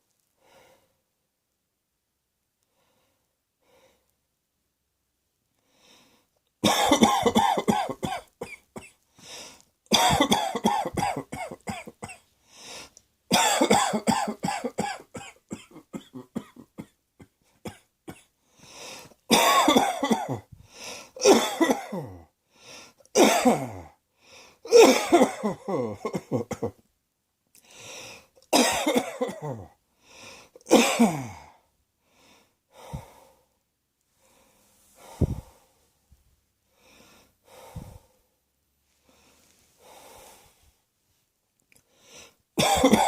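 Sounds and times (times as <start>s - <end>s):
person coughing: 6.6s - 9.0s, 9.9s - 12.2s, 13.3s - 18.3s, 19.3s - 20.5s, 21.2s - 22.3s, 23.2s - 24.0s, 24.7s - 26.8s, 28.5s - 29.8s, 30.7s - 31.6s, 42.6s - 43.0s.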